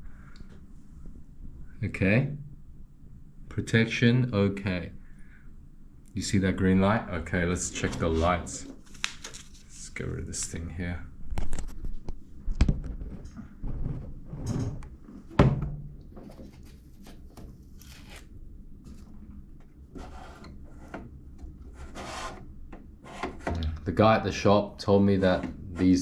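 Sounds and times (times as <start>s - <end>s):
rubbing and scraping: 7.6s - 9.9s, 19.9s - 21.0s, 21.6s - 22.4s.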